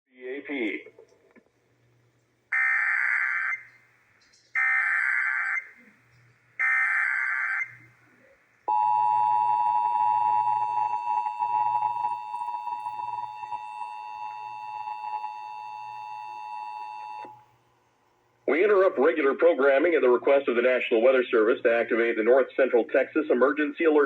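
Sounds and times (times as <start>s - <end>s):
two-tone attention signal: 8.7s - 17.4s.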